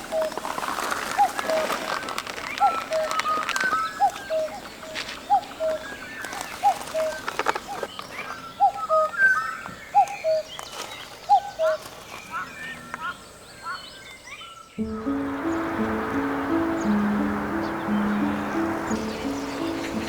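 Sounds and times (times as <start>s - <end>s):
birds chirping: 13.6s - 20.0s
bird two-note call: 14.8s - 20.0s.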